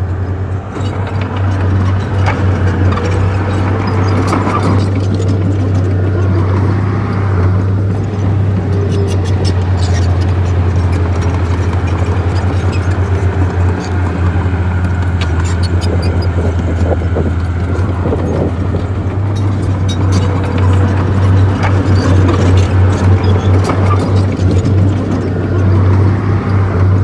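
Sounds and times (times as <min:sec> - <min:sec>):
bulldozer diesel engine drone: 0:00.0 - 0:27.0
sharp clicks and knocks: 0:00.7 - 0:27.0.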